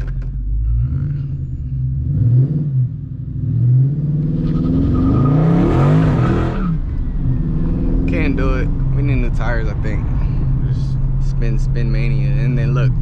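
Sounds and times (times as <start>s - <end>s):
car engine revving hard: 2.0s - 9.4s
tires spinning: 3.8s - 11.5s.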